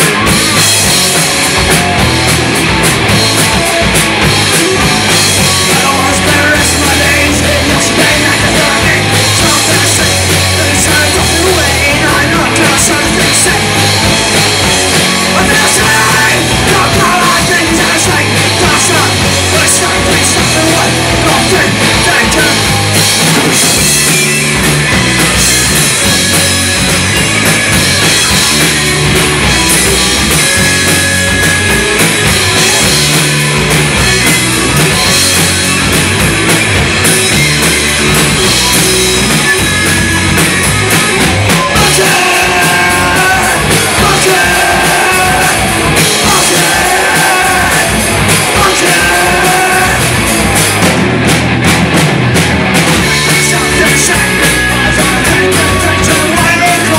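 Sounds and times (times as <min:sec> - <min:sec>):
punk rock band playing live: 0:00.0 - 0:56.9
person singing: 0:04.4 - 0:22.8, 0:41.5 - 0:50.3, 0:53.0 - 0:56.9.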